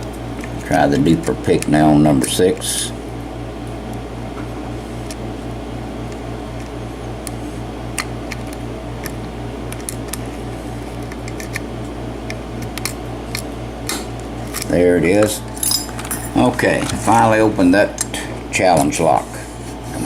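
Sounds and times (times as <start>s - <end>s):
low pulsing mechanical hum: 0.0s - 20.0s.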